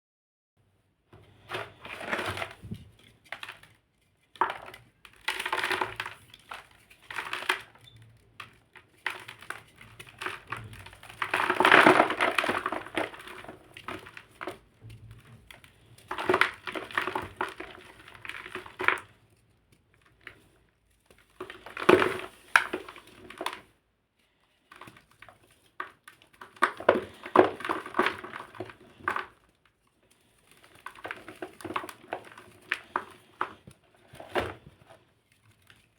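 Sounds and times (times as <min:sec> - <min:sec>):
crunchy blocks crushed by hand: 0:01.4 - 0:03.7, 0:04.3 - 0:07.8, 0:08.4 - 0:19.1, 0:21.2 - 0:23.7, 0:24.7 - 0:29.5, 0:30.6 - 0:35.0.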